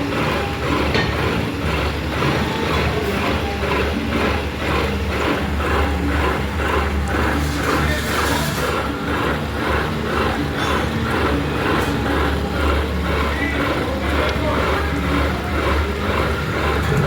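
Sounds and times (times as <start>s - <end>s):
metal lathe humming: 0.0s - 17.0s.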